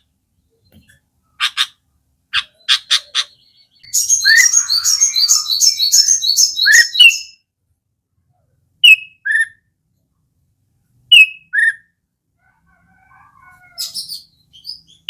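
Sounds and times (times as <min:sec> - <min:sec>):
quick bird chirps: 0:02.4 - 0:07.3
bulbul two-note calls: 0:03.9 - 0:07.3.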